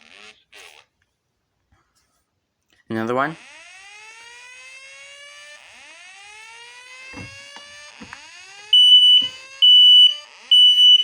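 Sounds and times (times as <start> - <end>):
fire alarm whoop tone: 3.4 - 11.0
light knocks: 7.1 - 8.2
smoke alarm beeps: 7.2 - 11.0.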